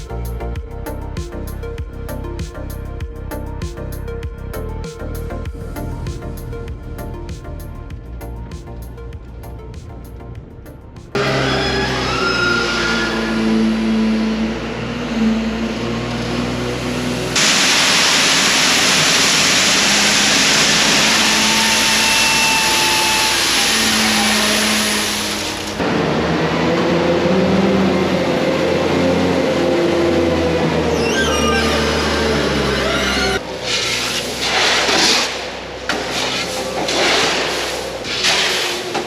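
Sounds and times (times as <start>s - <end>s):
background music: 0.0s - 17.4s.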